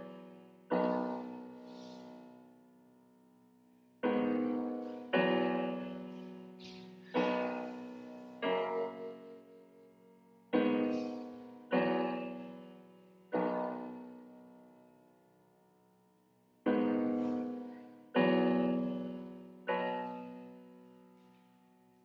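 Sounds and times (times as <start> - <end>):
solo piano chords: 0.0 - 22.0.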